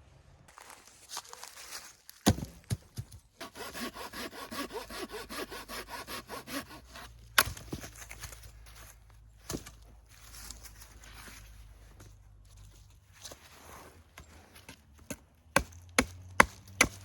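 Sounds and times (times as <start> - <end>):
hand saw cutting wood: 3.4 - 7.2.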